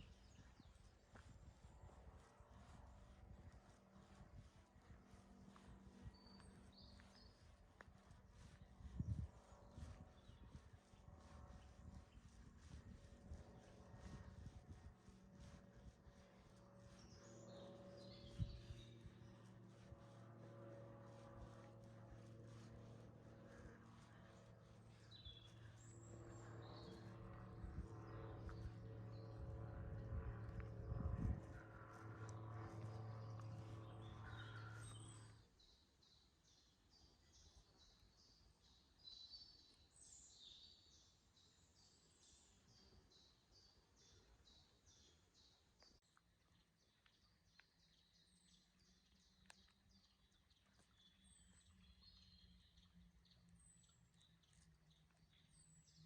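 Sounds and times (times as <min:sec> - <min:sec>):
steady low hum: 0:00.0 - 0:35.6
faint birdsong chirps: 0:05.0 - 0:14.6, 0:15.2 - 0:56.0.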